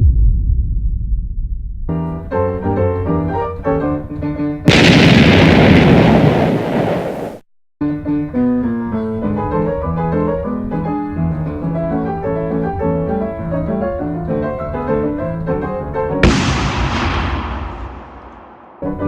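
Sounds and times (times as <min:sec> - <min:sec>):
loud burst of noise: 0:16.2 - 0:18.8.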